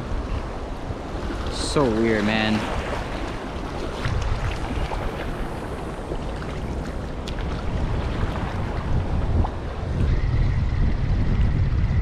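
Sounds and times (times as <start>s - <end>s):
ocean waves washing: 0.0s - 12.0s
wind rumbling on microphone: 0.0s - 12.0s.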